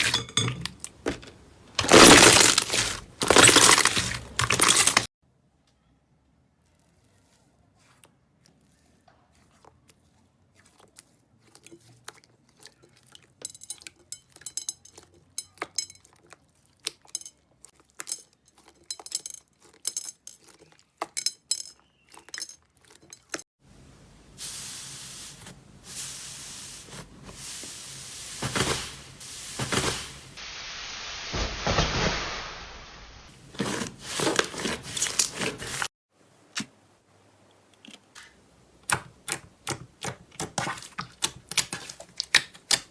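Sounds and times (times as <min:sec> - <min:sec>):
slime clicking and crackling: 0:38.9 - 0:42.9.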